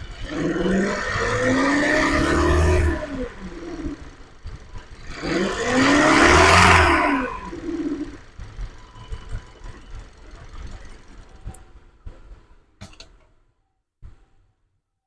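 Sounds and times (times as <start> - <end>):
car engine revving: 0.0 - 12.0
drivetrain rumble: 0.0 - 13.3.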